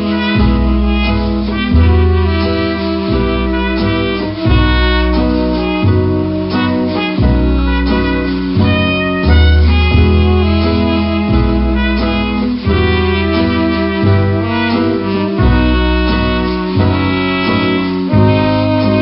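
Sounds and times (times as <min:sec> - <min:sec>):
instrumental background music: 0:00.0 - 0:19.0.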